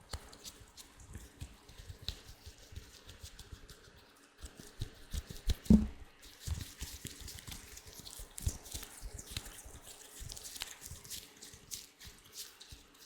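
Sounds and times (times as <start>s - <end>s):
latex gloves clicking and tapping: 0.0s - 13.0s
thump: 5.7s - 6.0s.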